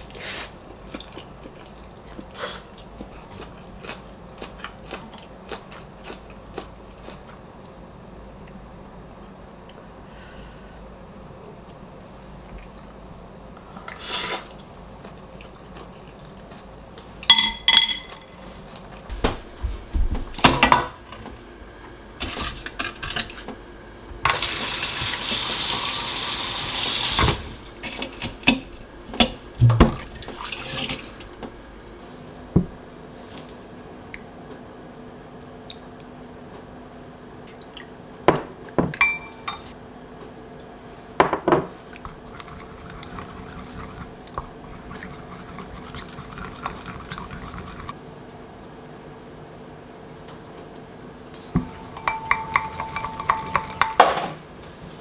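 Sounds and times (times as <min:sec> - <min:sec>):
dishes and pots clinking: 0:17.3 - 0:18.4, 0:27.0 - 0:31.6, 0:38.9 - 0:39.7, 0:51.6 - 0:54.4
tap running into sink: 0:24.2 - 0:31.6.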